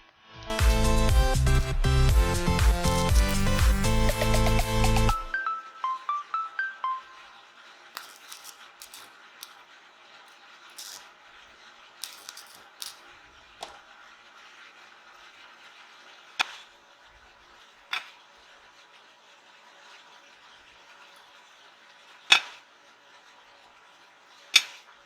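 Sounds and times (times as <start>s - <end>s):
light clicks and scrapes: 8.0s - 13.8s, 14.6s - 16.8s, 17.5s - 25.0s.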